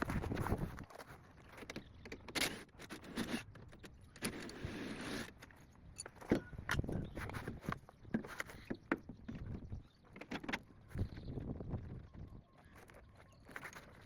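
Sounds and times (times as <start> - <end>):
metal tools clinking and knocking: 5.9 - 7.0.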